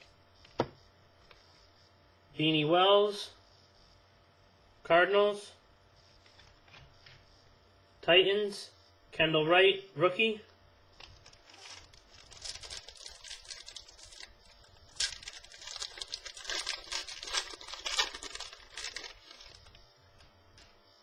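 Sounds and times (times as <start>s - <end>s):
packaging crinkling and rustling: 11.0s - 20.8s.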